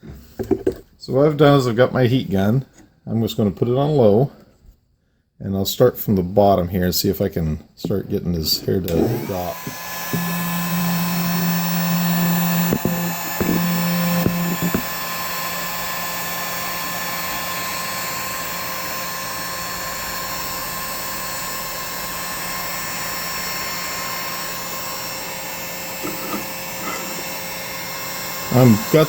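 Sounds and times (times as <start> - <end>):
heat gun fan whirring: 8.8 - 29.0.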